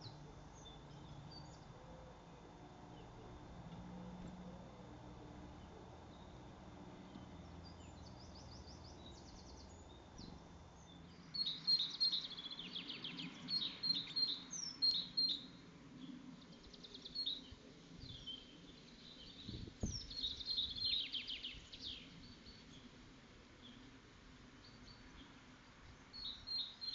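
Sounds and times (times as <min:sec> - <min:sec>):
low hum: 0:00.0 - 0:14.0
songbird chirps and trills: 0:00.0 - 0:26.9.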